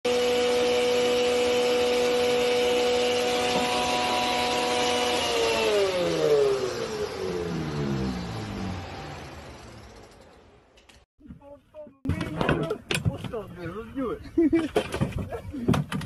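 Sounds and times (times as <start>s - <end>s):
motor whining and winding down: 0.1s - 10.8s.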